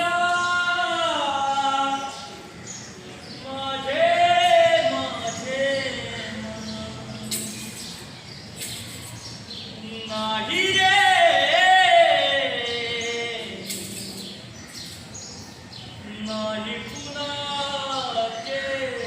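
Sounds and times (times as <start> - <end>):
man singing wavering phrase: 3.4 - 7.5, 9.8 - 13.7.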